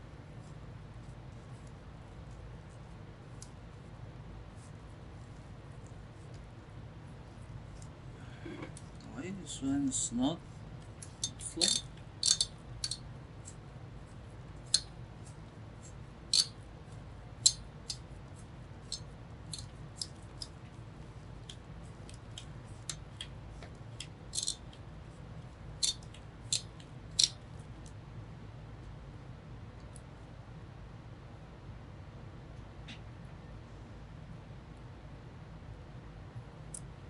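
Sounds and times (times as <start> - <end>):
low steady hum: 0.0 - 37.0.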